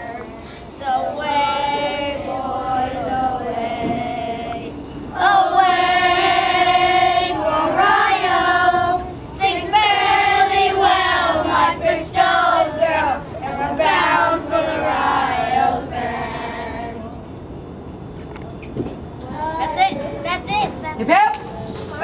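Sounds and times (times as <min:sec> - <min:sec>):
children singing together: 0:00.0 - 0:17.2.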